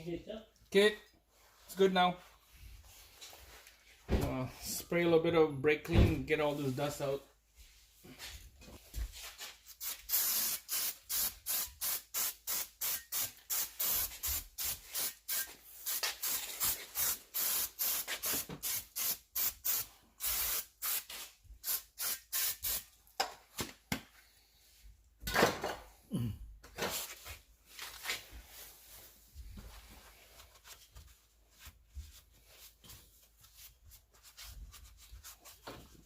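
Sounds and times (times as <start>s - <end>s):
hissing spray bursts: 9.7s - 22.9s
aerosol spray spurts: 9.8s - 22.8s.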